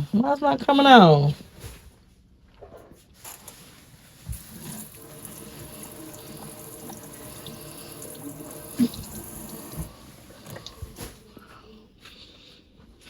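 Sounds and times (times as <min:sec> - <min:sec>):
water running into sink: 0:04.2 - 0:11.0.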